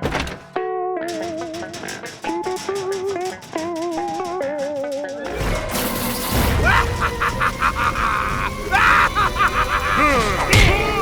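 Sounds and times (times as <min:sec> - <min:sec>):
sliding and rattling sound effects: 0:00.0 - 0:11.0
loud impact: 0:01.1 - 0:11.0.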